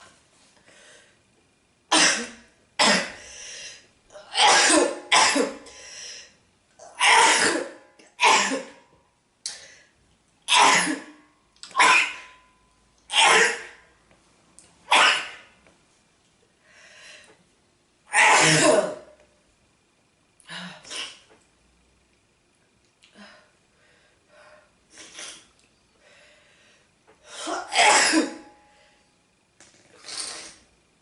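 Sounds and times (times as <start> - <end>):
person sneezing: 7.0 - 8.8, 10.5 - 12.4, 13.1 - 13.8, 14.9 - 15.5, 18.1 - 19.1, 20.5 - 21.3, 27.3 - 28.5.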